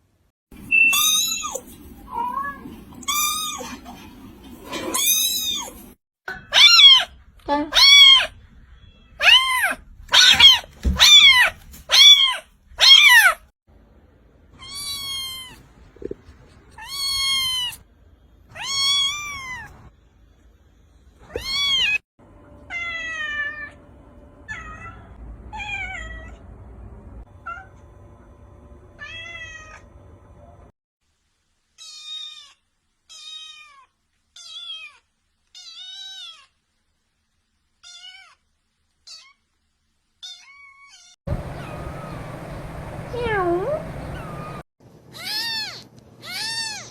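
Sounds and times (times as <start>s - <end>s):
kittens meowing: 7.7s - 13.4s
steady hum: 41.3s - 44.6s.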